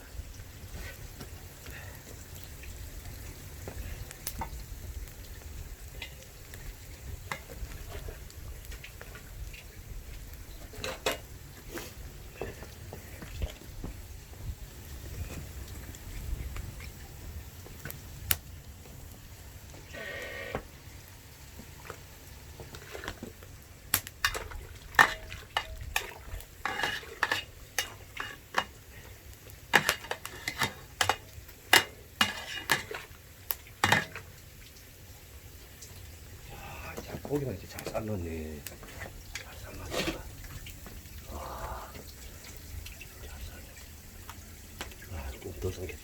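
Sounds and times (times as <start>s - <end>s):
metal utensils clinking on a pot: 10.6s - 11.3s, 24.2s - 28.9s, 29.7s - 33.1s, 33.8s - 34.3s.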